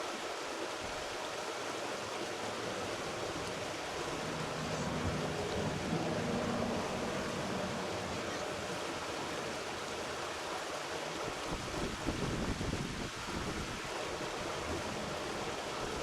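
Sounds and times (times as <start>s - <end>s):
creek water rushing: 0.0s - 16.0s
wind buffeting microphone: 11.4s - 16.0s.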